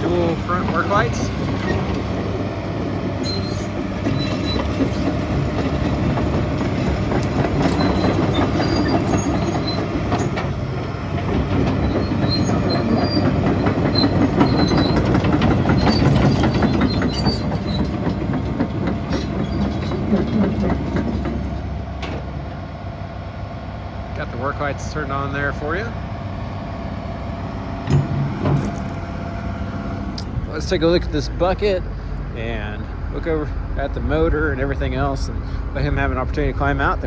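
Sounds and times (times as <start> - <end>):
excavator engine rumbling: 0.0 - 37.0
steel parts squeaking: 3.2 - 5.0, 7.6 - 10.4, 11.8 - 18.0
metallic clanking: 27.8 - 29.1.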